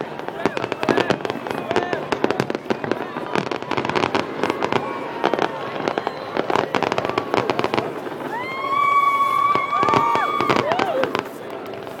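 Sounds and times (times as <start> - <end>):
fireworks crackling and popping: 0.0 - 12.0
firework shells whistling: 0.1 - 12.0.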